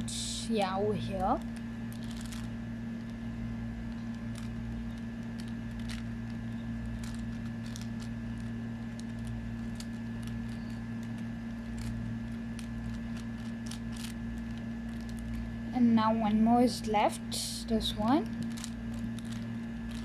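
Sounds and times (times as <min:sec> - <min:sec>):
electrical hum: 0:00.0 - 0:20.0
puzzle cube clicking: 0:05.3 - 0:06.0, 0:07.0 - 0:10.3.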